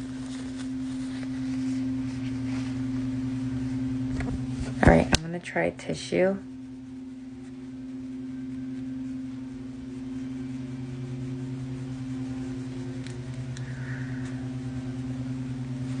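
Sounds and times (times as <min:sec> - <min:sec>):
low electrical hum: 0:00.0 - 0:16.0
soft hiss: 0:06.6 - 0:16.0.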